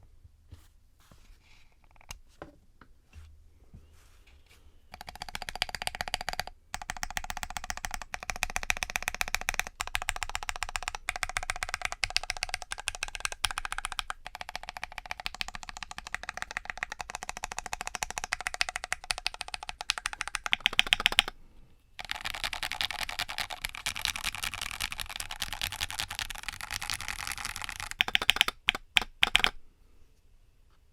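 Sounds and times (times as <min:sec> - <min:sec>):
mechanical keyboard typing: 0:04.9 - 0:21.4, 0:22.0 - 0:29.6.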